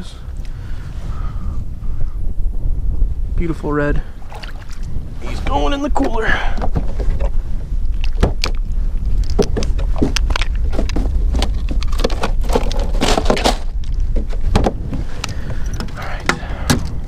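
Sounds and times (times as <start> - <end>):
wind rumbling on microphone: 0.0 - 17.0
hard plastic knocks and rattles: 9.2 - 15.0.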